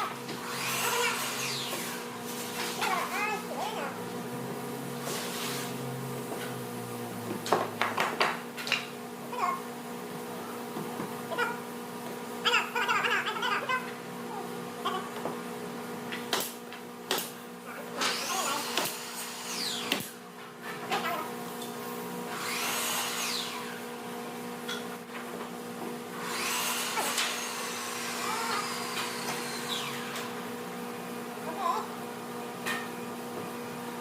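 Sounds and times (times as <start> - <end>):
steady background hum: 0.0 - 34.0
power drill spinning: 0.4 - 2.0, 22.3 - 23.8, 26.2 - 30.3.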